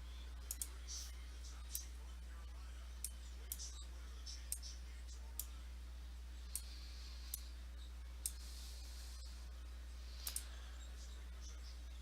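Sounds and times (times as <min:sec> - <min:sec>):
low electrical hum: 0:00.0 - 0:12.0
computer mouse clicks: 0:00.4 - 0:00.8, 0:06.5 - 0:07.5, 0:10.2 - 0:10.5.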